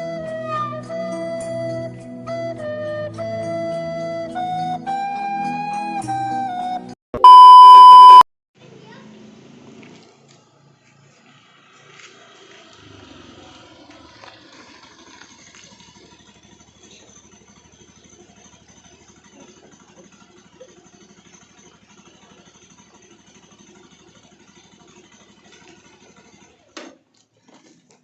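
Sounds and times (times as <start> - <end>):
motorcycle engine idling: 10.6 - 27.9.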